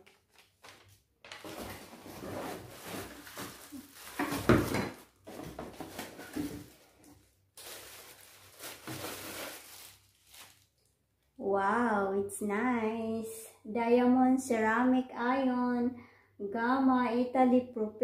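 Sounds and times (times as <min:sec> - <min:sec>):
packaging rustling and scraping: 0:00.1 - 0:10.8.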